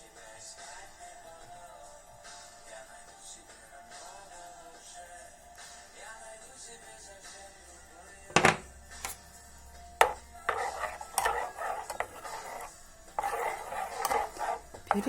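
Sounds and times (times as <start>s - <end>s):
faint background music: 0.0s - 15.0s
scraping and stirring: 8.3s - 9.2s, 10.0s - 15.0s.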